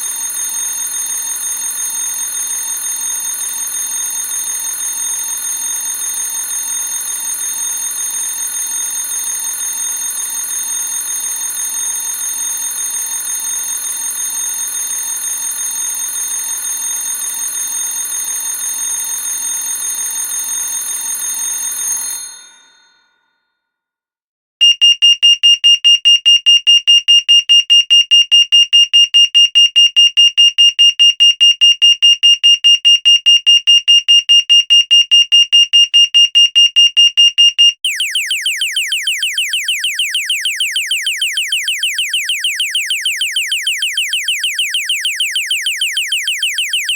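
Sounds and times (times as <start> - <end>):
high electronic alarm beeps: 24.6 - 46.9.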